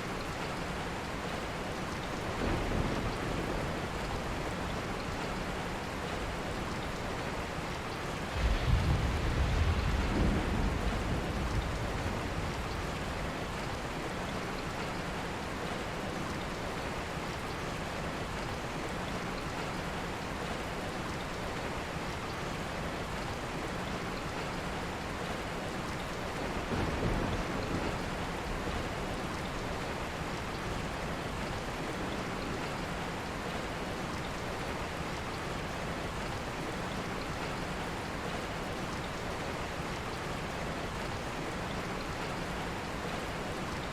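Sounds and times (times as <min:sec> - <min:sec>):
steady rain: 0:00.0 - 0:43.9
low thunder rolls: 0:08.3 - 0:13.5.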